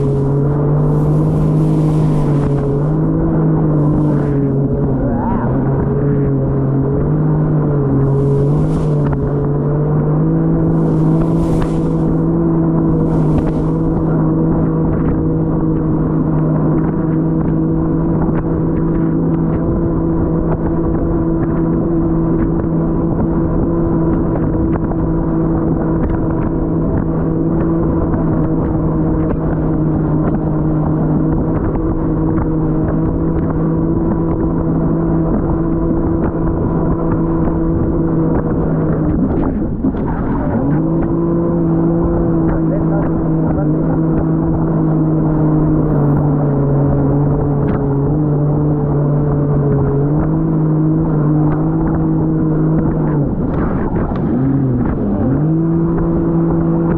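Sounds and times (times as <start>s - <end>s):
jet ski engine running: 0.0s - 56.9s.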